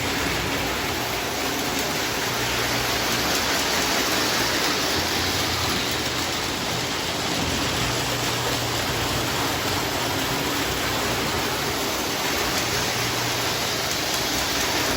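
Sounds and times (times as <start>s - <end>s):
toy train running on track: 0.0s - 14.9s.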